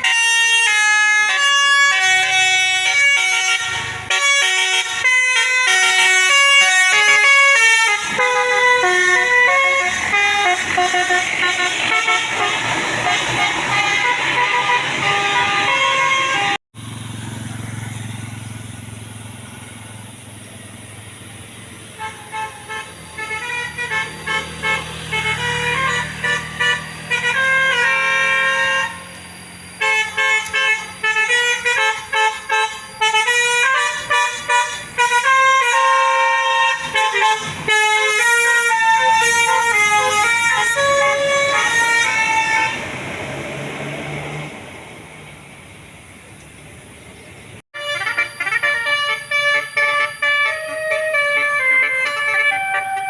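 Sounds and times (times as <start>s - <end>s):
musical bus air horn tune: 0.0s - 16.6s, 22.0s - 29.2s, 29.8s - 42.9s, 47.7s - 53.0s.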